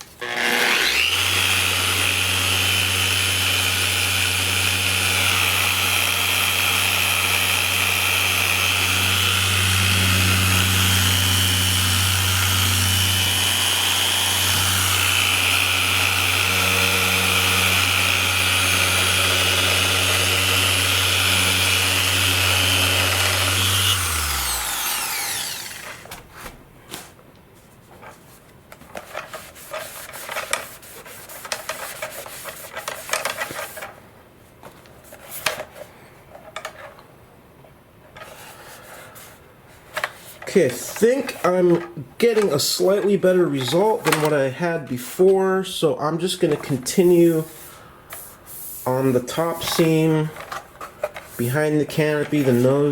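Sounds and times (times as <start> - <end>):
power buffer motor hum: 7.4 - 26.0.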